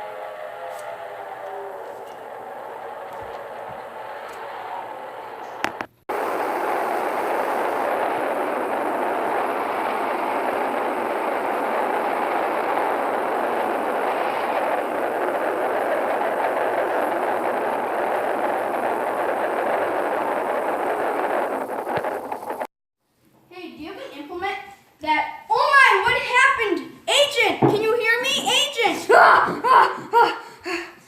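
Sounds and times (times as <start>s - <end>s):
train running along track: 0.0s - 22.7s.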